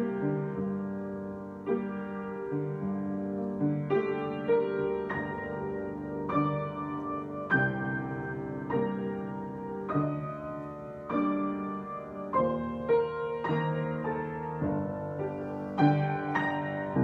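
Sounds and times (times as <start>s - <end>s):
piano chords ringing: 0.0s - 17.0s.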